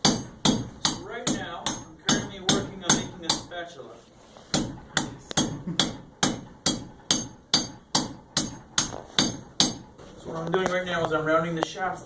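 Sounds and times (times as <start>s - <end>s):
hammer striking metal on anvil: 0.0s - 3.6s, 4.5s - 9.9s.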